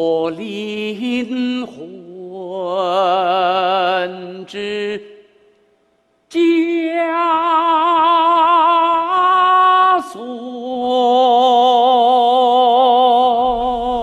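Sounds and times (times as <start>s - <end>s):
man singing opera style: 0.0s - 5.2s, 6.3s - 14.0s.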